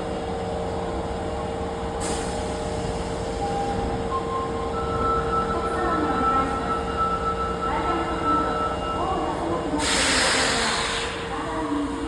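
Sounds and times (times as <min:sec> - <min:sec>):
subway train electrical hum: 0:00.0 - 0:12.0
air hiss burst: 0:09.8 - 0:11.2.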